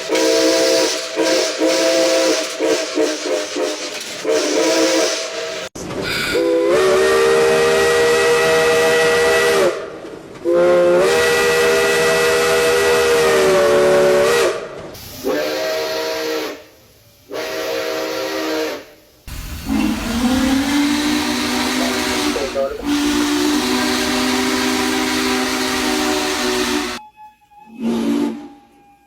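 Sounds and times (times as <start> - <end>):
steam hissing: 0.0 - 6.4, 14.9 - 27.0
steam whistle blasts: 0.0 - 29.0.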